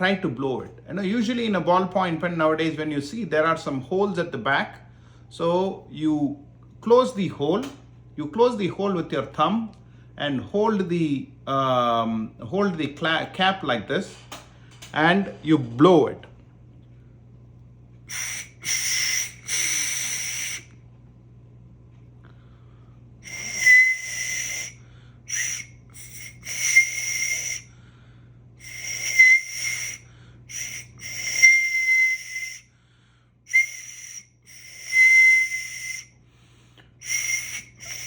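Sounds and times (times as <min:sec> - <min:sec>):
breathy whistle from pen cap: 0:18.1 - 0:20.7, 0:23.2 - 0:27.8, 0:28.6 - 0:32.7, 0:33.5 - 0:36.1, 0:37.0 - 0:38.0.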